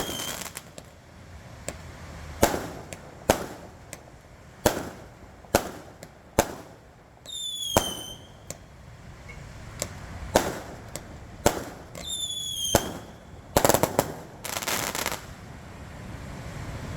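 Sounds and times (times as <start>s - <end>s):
firework whistles: 0.0s - 0.8s, 4.7s - 9.4s, 10.3s - 15.4s
fireworks banging: 0.0s - 15.4s
fireworks crackling: 0.0s - 15.5s.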